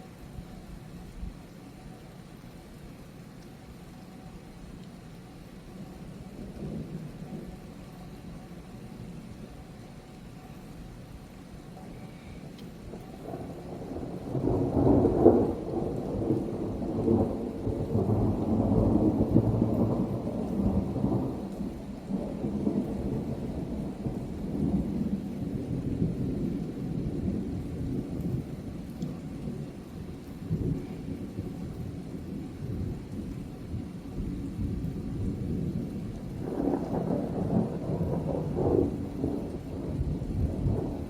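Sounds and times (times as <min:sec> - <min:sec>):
steady rain: 0:00.0 - 0:41.0
thunder rumbling: 0:12.7 - 0:41.0.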